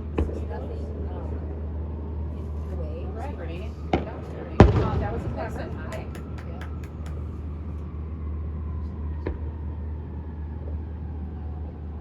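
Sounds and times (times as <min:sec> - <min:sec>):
steady low rumble: 0:03.6 - 0:07.9
firework bang: 0:04.6 - 0:07.2.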